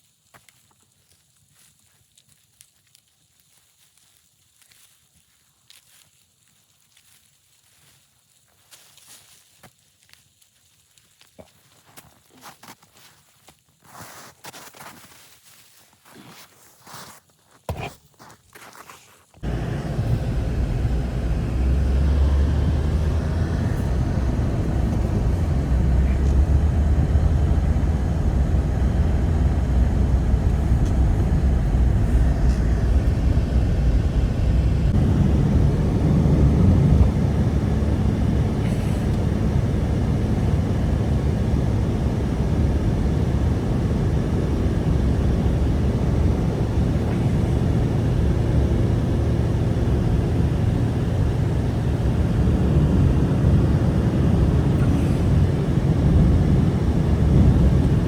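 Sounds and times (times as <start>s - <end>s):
blizzard wind blowing: 19.4s - 58.0s.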